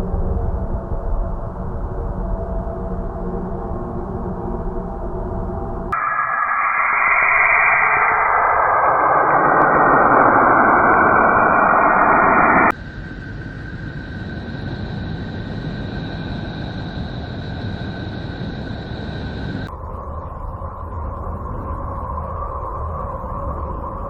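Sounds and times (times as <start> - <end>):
thin steady high tone: 6.0 - 24.0.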